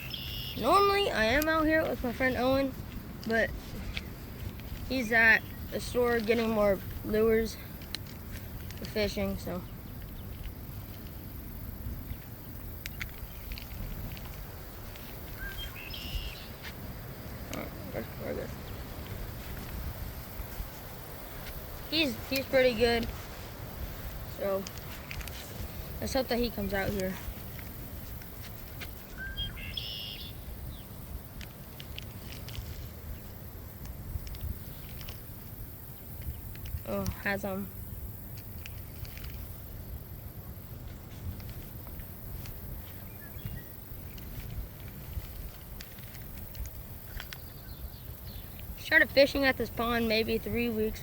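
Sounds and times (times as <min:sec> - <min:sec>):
bird call: 0:00.0 - 0:01.5, 0:15.3 - 0:16.7, 0:29.1 - 0:30.8
wind buffeting microphone: 0:00.0 - 0:51.0
faint ticks: 0:18.4 - 0:49.0
small clicks: 0:44.1 - 0:47.6.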